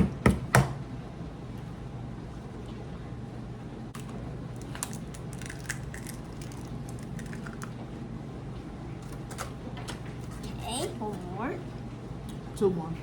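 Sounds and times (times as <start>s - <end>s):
eggs cracking on bowl rim: 4.0s - 7.8s.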